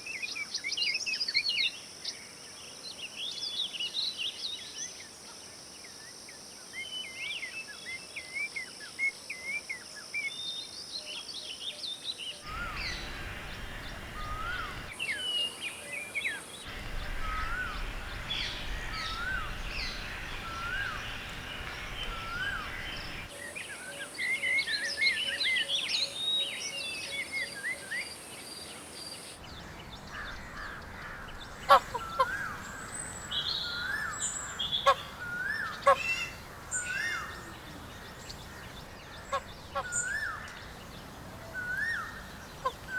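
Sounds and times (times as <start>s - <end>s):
harsh bird calls: 12.4s - 15.6s, 16.3s - 23.3s, 29.3s - 42.9s
small birds chirping: 12.4s - 42.9s
bird short rising call: 12.5s - 15.0s, 16.6s - 23.3s
background hiss and rumble: 12.5s - 25.0s, 28.0s - 42.9s.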